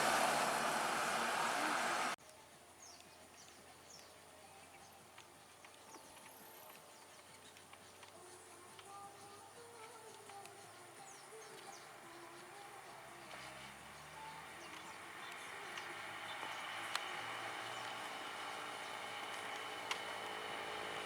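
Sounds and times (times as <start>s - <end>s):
loud vehicle road noise: 0.0s - 2.2s, 12.9s - 21.0s.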